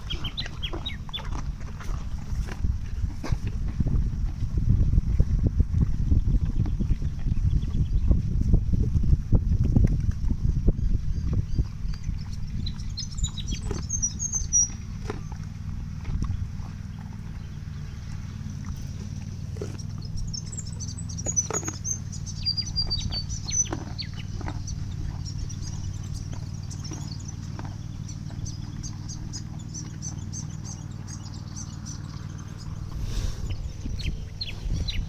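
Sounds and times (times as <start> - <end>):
birds chirping: 0.0 - 2.5, 10.7 - 35.0
steady low rumble: 0.0 - 35.0.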